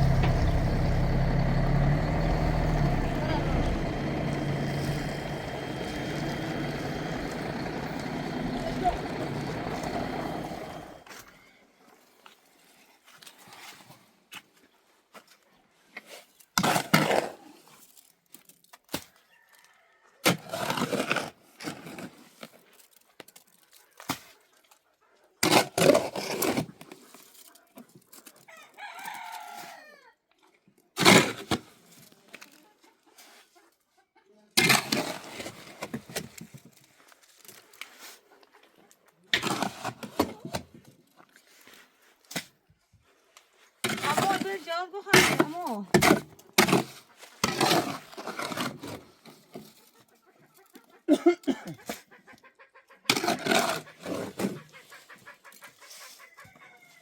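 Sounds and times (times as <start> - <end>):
rooster crowing: 28.5 - 30.1, 56.4 - 57.0.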